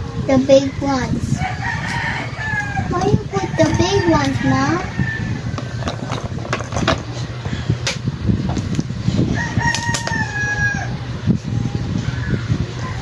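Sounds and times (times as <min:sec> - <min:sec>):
low hum: 0:00.0 - 0:13.0
rooster crowing: 0:01.3 - 0:05.9, 0:09.3 - 0:11.0.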